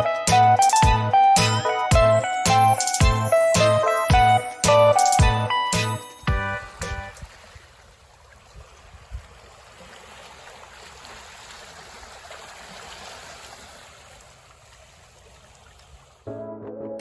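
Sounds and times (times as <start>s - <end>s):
small waves washing: 6.4s - 16.3s.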